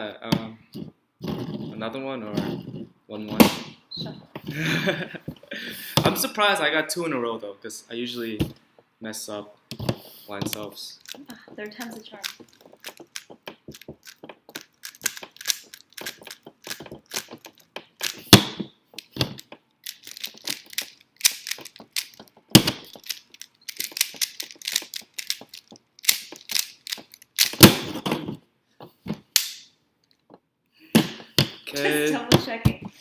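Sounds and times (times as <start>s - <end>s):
puzzle cube clicking: 9.7s - 28.3s.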